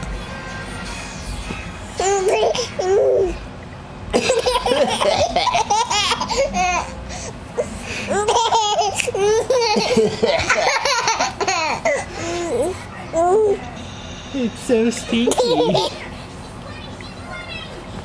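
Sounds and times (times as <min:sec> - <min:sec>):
baby laughing: 0:02.0 - 0:03.4, 0:04.1 - 0:07.3, 0:08.0 - 0:13.6, 0:15.2 - 0:16.1.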